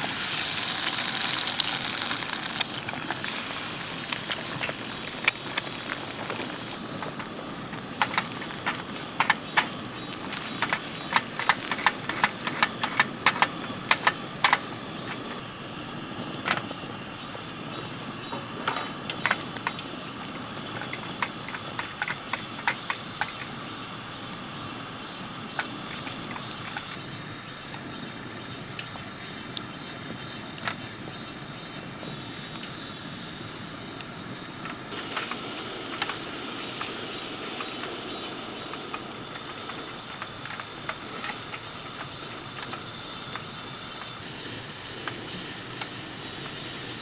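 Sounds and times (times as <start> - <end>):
creek rushing: 0.0 - 12.2
sharp clicks and knocks: 0.0 - 15.4.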